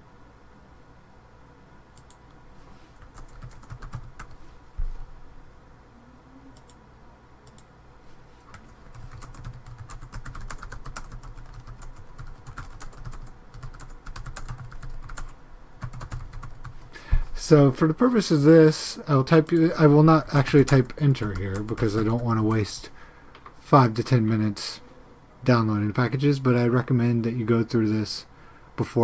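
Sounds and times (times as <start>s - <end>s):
typing on computer keyboard: 3.0s - 4.4s, 8.5s - 16.7s.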